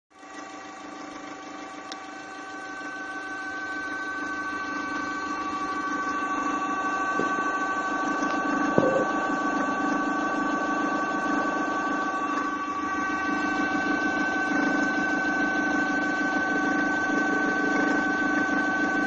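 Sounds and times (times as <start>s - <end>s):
short knock: 8.8s - 9.1s.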